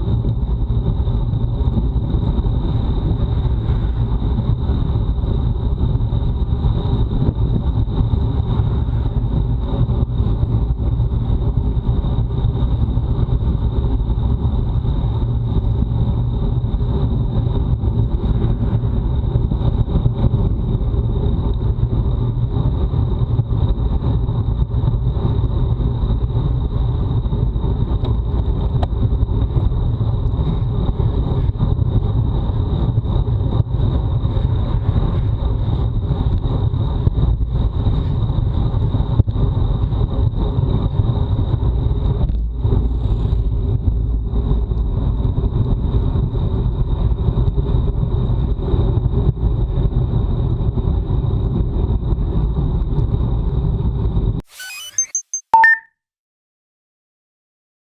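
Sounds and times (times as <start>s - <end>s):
wind rushing over microphone: 0.0s - 54.1s
thin steady high tone: 54.5s - 55.9s.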